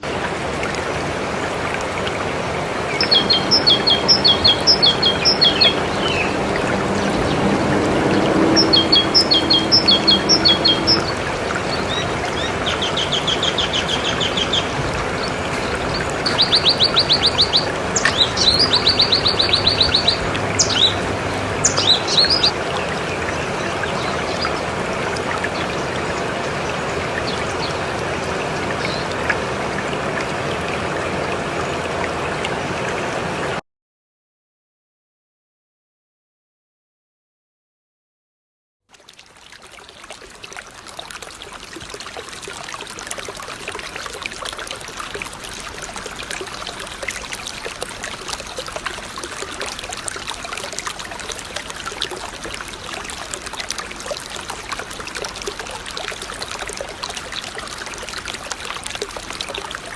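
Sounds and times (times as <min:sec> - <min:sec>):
running water: 0:00.0 - 0:33.6, 0:38.9 - 0:59.9
songbirds singing trills: 0:02.9 - 0:07.5, 0:08.2 - 0:22.6.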